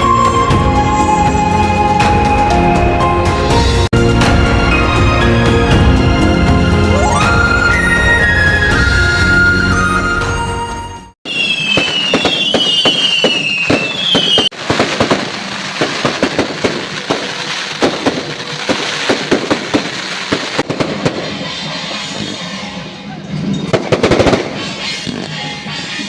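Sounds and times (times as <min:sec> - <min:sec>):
high falling whistle: 0:11.2 - 0:14.5
firecrackers crackling: 0:11.3 - 0:26.0.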